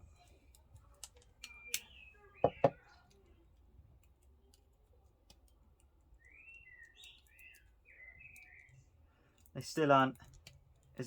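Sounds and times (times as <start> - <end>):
faint bird chirping: 1.4 - 3.6, 5.8 - 9.4.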